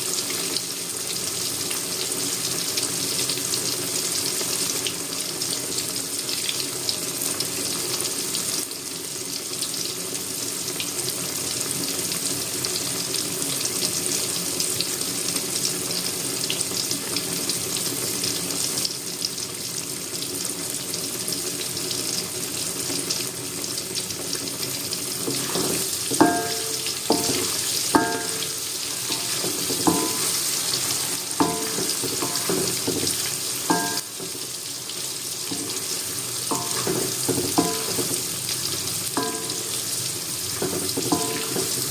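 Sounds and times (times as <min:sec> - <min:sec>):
tofu sizzling in hot oil: 0:00.0 - 0:41.9
utensil clinking against pan: 0:25.3 - 0:30.6, 0:31.4 - 0:34.3, 0:36.5 - 0:38.2, 0:39.2 - 0:39.9, 0:40.6 - 0:41.9.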